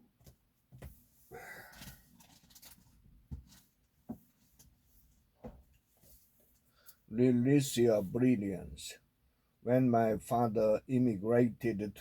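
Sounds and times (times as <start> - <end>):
soft breath: 1.2 - 2.2.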